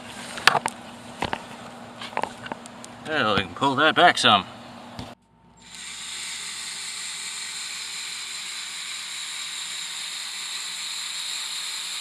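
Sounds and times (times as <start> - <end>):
electric drill boring into earth: 5.6 - 12.0.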